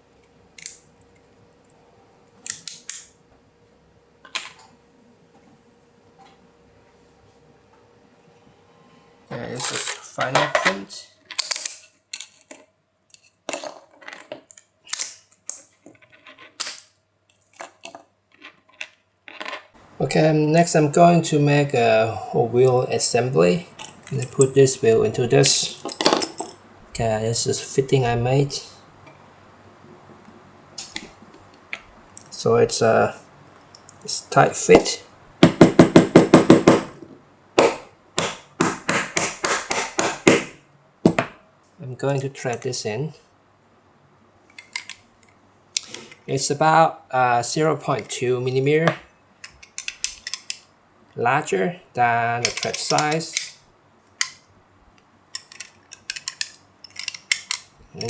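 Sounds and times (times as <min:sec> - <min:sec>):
plastic parts clacking: 0:09.4 - 0:19.7, 0:23.7 - 0:26.6, 0:44.5 - 0:46.3, 0:48.0 - 0:50.7, 0:52.3 - 0:58.0.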